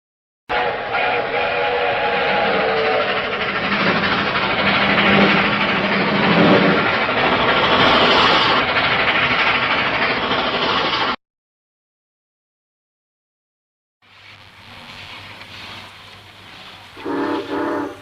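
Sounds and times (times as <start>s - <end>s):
train whistle chord: 0.5s - 3.6s, 17.0s - 18.0s
rush of running train: 0.5s - 11.2s, 14.0s - 18.0s.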